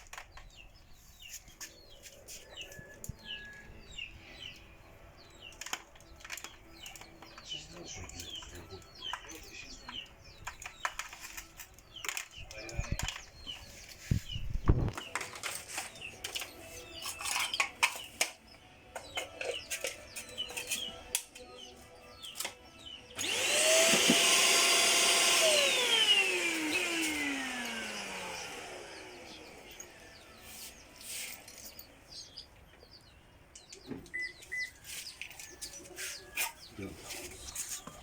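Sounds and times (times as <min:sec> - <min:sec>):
handling clicks and knocks: 0:05.5 - 0:13.6
vacuum cleaner motor whining: 0:23.2 - 0:30.4.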